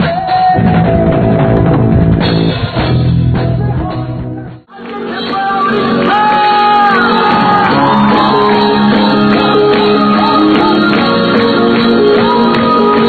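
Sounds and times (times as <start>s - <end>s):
live band playing: 0.0s - 13.0s
person singing long sliding notes: 4.7s - 13.0s.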